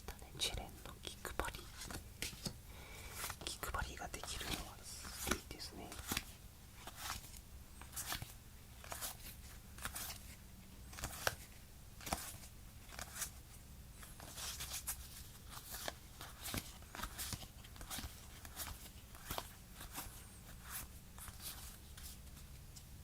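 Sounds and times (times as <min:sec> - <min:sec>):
trading cards being handled: 0:01.3 - 0:13.4.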